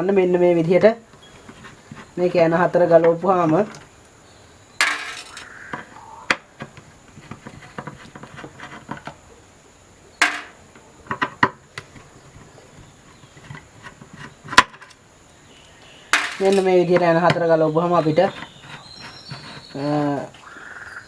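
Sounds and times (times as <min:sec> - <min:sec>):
sharp metallic knocks: 0:04.8 - 0:05.4, 0:10.2 - 0:10.6, 0:16.2 - 0:16.7.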